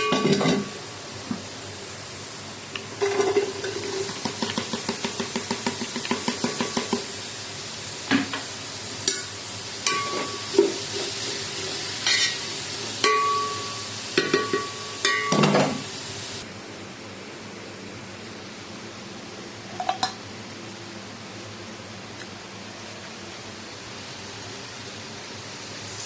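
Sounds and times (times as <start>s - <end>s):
steady sizzle: 0.0s - 16.5s, 20.0s - 26.0s
spoon clinking against pot: 13.0s - 15.6s.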